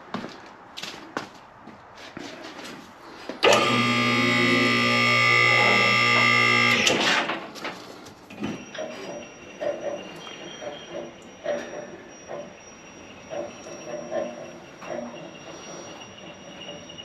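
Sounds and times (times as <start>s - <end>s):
faint high whine: 3.4s - 7.0s
hydraulic pump motor humming: 3.4s - 7.0s.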